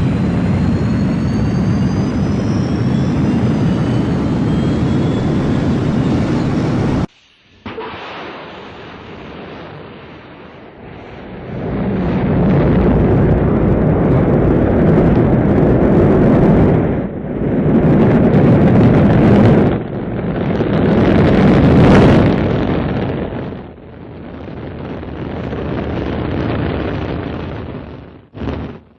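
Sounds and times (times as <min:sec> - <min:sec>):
deep noisy spaceship rumble: 0:00.0 - 0:07.8, 0:08.4 - 0:25.3.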